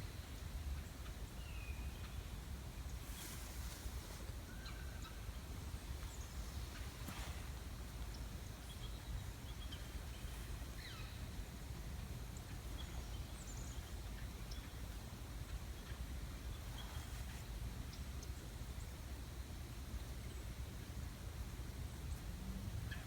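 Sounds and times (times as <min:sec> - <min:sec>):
soft rustles: 0:03.0 - 0:04.4, 0:06.4 - 0:08.2, 0:16.7 - 0:17.6.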